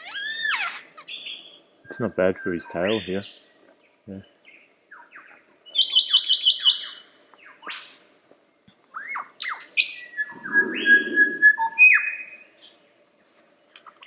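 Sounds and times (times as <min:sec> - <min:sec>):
lyrebird singing whistled song: 0:04.5 - 0:08.0, 0:08.9 - 0:12.7.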